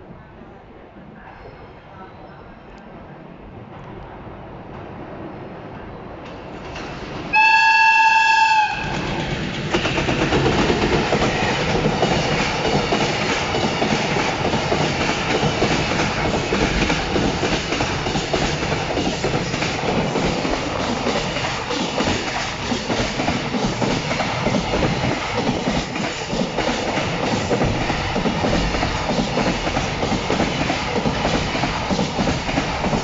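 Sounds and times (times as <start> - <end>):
train rushing past: 3.4 - 33.0
locomotive horn blast: 7.3 - 8.9.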